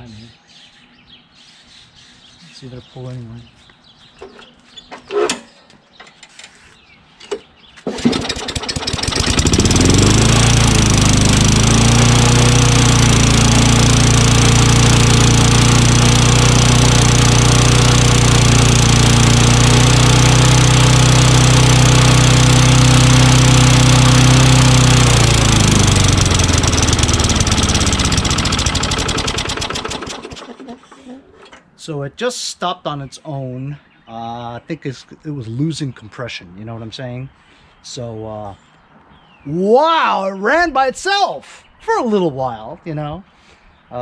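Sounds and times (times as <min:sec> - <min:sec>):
lawn mower engine running: 0:07.8 - 0:31.6.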